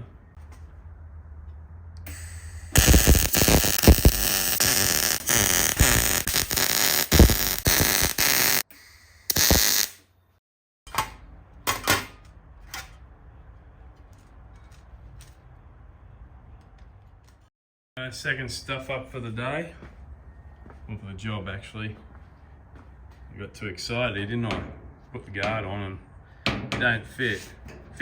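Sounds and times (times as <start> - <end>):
welder crackling and buzzing: 2.1 - 10.0.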